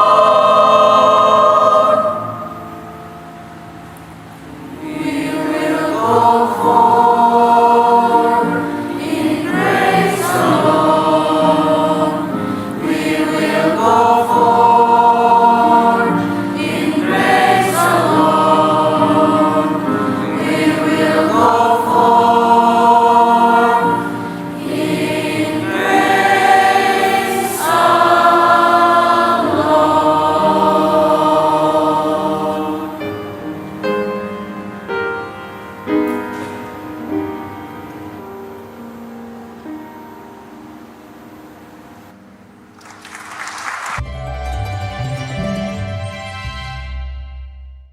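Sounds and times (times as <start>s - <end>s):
choir singing a hymn: 0.0s - 3.6s, 4.2s - 38.8s.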